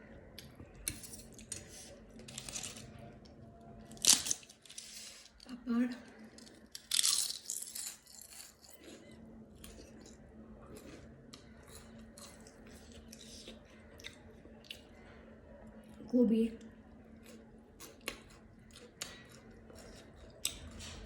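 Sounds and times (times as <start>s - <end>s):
chewing with small crunches: 0.0s - 16.0s, 16.6s - 21.0s
faint steady hum: 0.0s - 21.0s
crisp cracker crunching: 0.8s - 5.5s, 6.2s - 9.1s.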